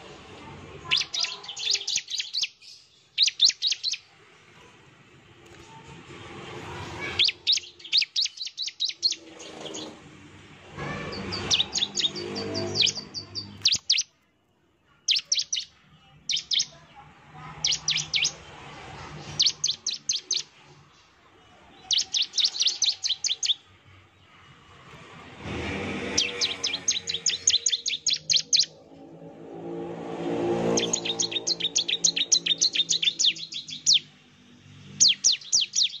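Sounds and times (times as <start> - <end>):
bird singing sharp high chirps: 0.8 - 4.1, 7.0 - 10.0, 11.0 - 14.2, 15.0 - 16.8, 17.6 - 18.5, 19.2 - 20.6, 21.7 - 23.7, 26.0 - 28.8, 30.6 - 34.2, 34.8 - 36.0.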